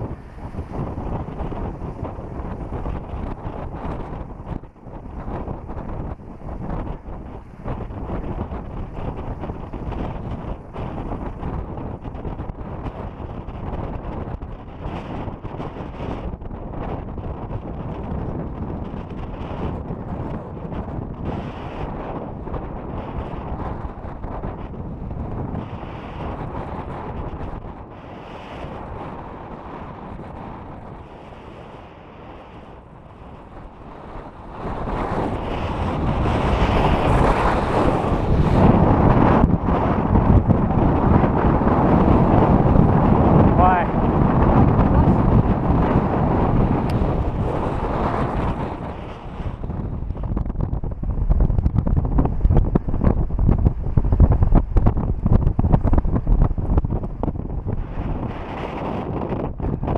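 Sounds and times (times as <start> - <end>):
wind buffeting microphone: 0.0 - 59.9.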